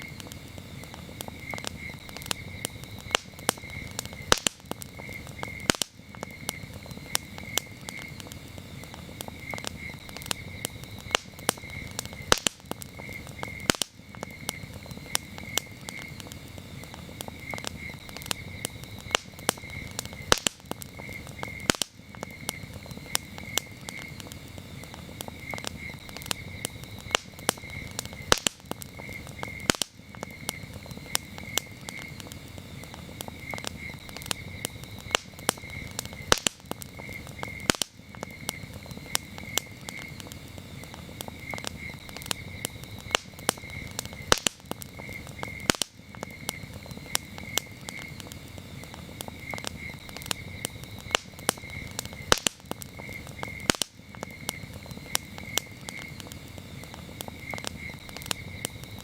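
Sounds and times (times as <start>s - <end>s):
campfire crackling and popping: 0.0s - 59.0s
crickets chirping: 0.0s - 59.0s.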